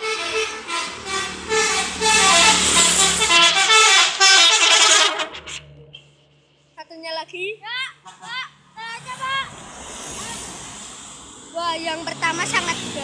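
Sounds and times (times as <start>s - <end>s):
musical air horn tune: 0.0s - 5.6s
bus engine running: 0.0s - 6.6s.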